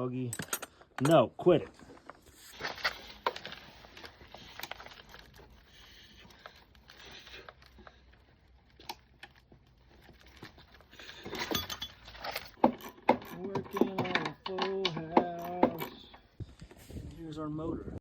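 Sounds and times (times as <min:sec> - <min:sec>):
metal hand tools clinking: 0:10.1 - 0:16.3.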